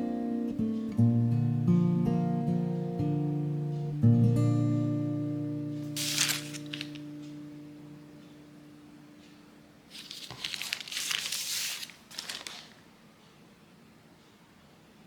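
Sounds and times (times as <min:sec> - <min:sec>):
crackly rustling: 0:06.0 - 0:07.4, 0:09.9 - 0:13.0.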